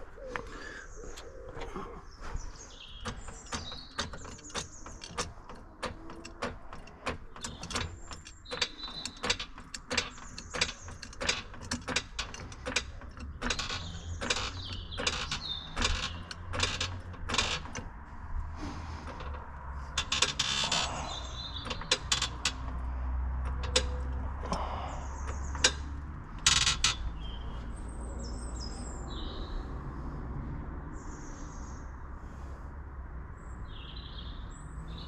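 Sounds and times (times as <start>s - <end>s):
jack stands ratcheting clicks: 3.0s - 18.0s, 18.9s - 27.1s.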